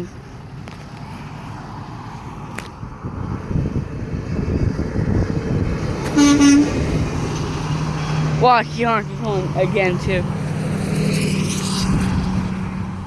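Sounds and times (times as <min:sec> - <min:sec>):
truck engine rumbling: 0:00.0 - 0:13.0
air horn blast: 0:06.1 - 0:06.9.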